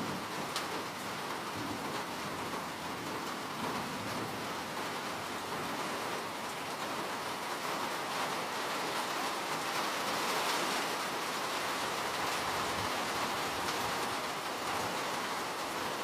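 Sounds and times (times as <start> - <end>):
steady rainfall: 0.0 - 16.0.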